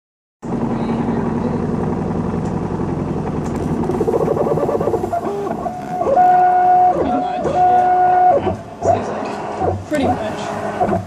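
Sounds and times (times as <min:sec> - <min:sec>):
printer motor hum: 0:01.3 - 0:11.0
fluttering stepper motor noise: 0:03.6 - 0:11.0.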